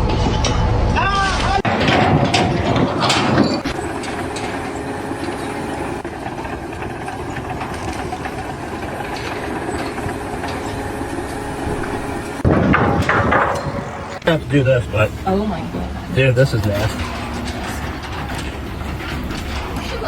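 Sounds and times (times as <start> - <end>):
machinery running: 0.0 - 20.0
faint ticks and clatter: 2.3 - 13.4.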